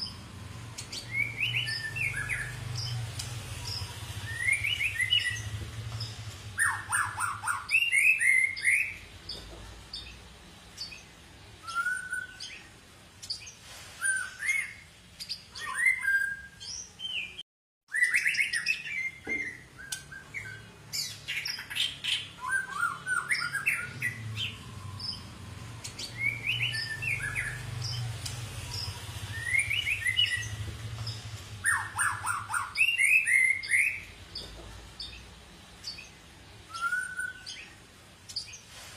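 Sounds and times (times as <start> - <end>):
bird singing whistled song: 0.8 - 3.0, 3.6 - 9.0, 11.6 - 12.7, 14.0 - 14.8, 15.6 - 28.1, 28.7 - 34.1, 36.7 - 37.8.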